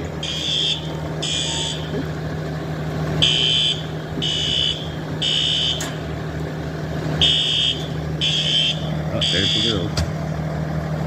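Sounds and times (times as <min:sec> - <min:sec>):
fire alarm beeping: 0:03.2 - 0:05.9, 0:07.2 - 0:09.8.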